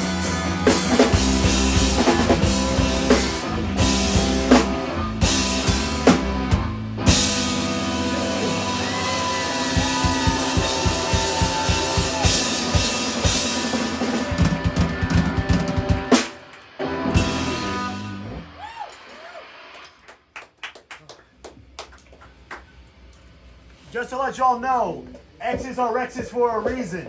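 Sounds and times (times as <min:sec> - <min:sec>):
rapid bass drum hits: 0:00.0 - 0:08.4, 0:09.6 - 0:16.2
rock band playing: 0:00.0 - 0:19.8.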